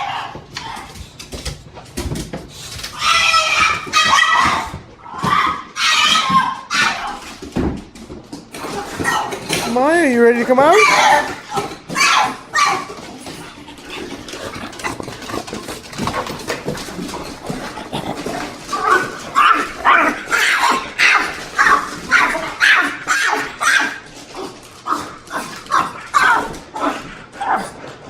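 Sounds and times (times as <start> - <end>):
dog whining yelps: 3.0 - 7.3, 10.8 - 13.0.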